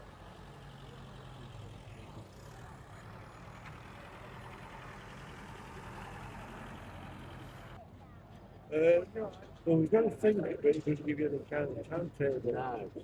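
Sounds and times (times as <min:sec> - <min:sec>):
low engine hum: 0:00.0 - 0:07.9
outdoor background noise: 0:00.0 - 0:13.0.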